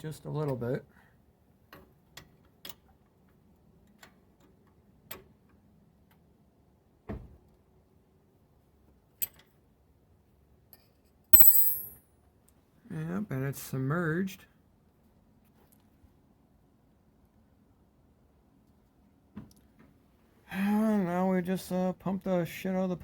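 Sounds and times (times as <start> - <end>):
loud ringing metal clink: 11.4 - 11.9.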